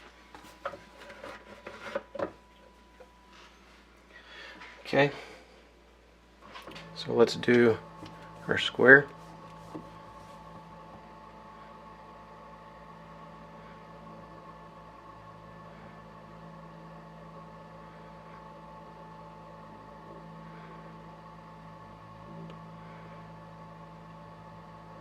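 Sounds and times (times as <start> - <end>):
lathe mechanical hum: 6.4 - 25.0.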